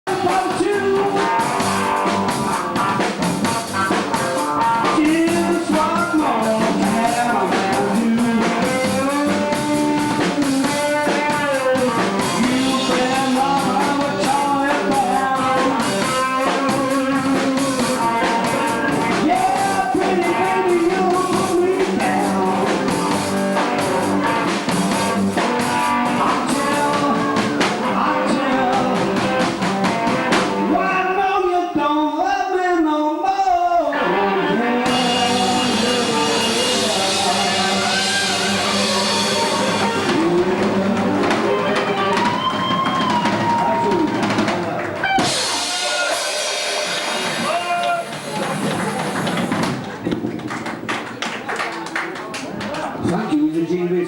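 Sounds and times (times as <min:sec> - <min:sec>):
rock and roll band playing: 0:00.0 - 0:51.6
person singing: 0:00.1 - 0:02.3, 0:04.1 - 0:44.5.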